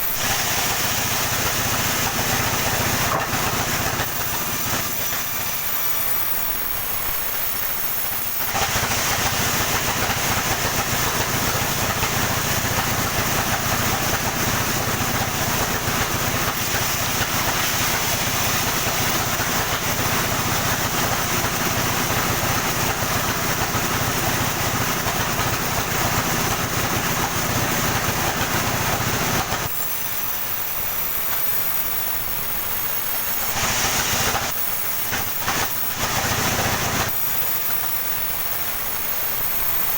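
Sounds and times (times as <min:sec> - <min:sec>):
saw cutting through trunk: 0:00.0 - 0:39.9
sawmill motor running: 0:00.0 - 0:39.9.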